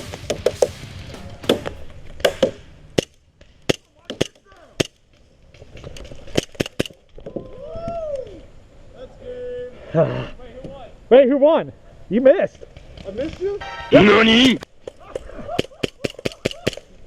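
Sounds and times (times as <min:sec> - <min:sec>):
person shouting: 0:13.9 - 0:14.6.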